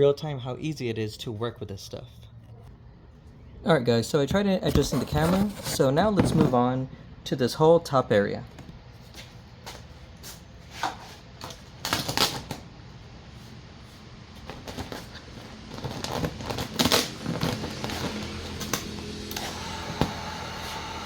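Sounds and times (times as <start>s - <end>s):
plastic film crinkling: 14.4s - 19.0s.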